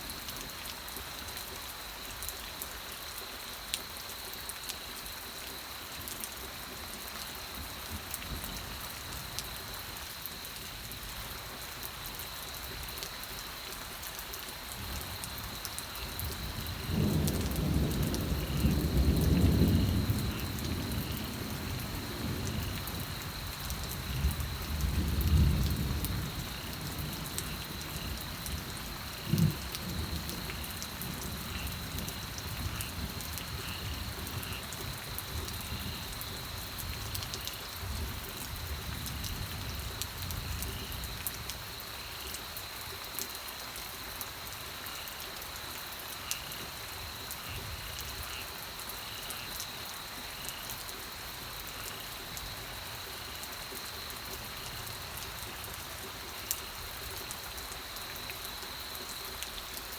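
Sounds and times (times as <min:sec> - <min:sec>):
steady rain: 0:00.0 - 0:59.9
thunder rumbling: 0:16.4 - 0:35.0.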